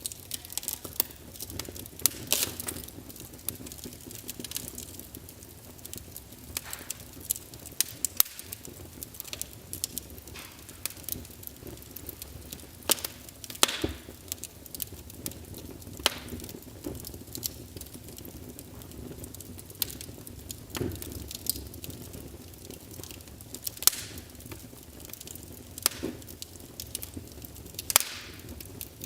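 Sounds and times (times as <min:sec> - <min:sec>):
low steady hiss: 0:00.0 - 0:29.0
wood fire crackling: 0:00.0 - 0:29.0
pops and snaps: 0:12.9 - 0:14.0, 0:23.0 - 0:24.6, 0:27.8 - 0:28.5.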